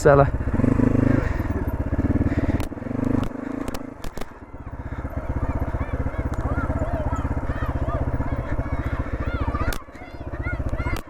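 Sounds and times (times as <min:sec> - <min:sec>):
motorcycle engine at low revs: 0:00.0 - 0:11.0
sharp clicks: 0:02.5 - 0:04.4, 0:10.6 - 0:11.0.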